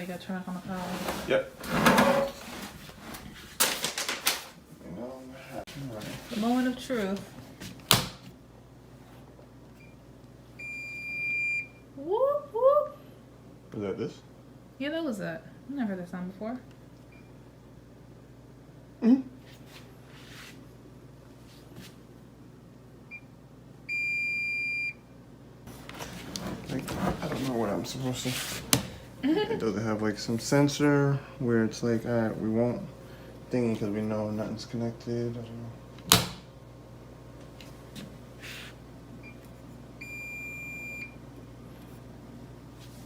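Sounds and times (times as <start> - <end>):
high-pitched dishwasher beep: 10.6 - 11.8, 23.9 - 25.0, 40.0 - 41.2
low steady hum: 20.7 - 43.0.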